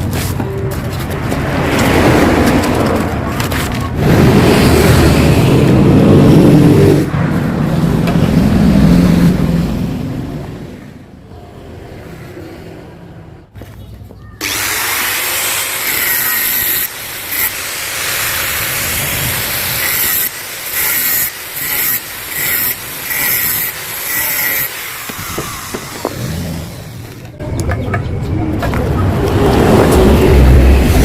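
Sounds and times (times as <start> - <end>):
power tool running: 14.4 - 27.2.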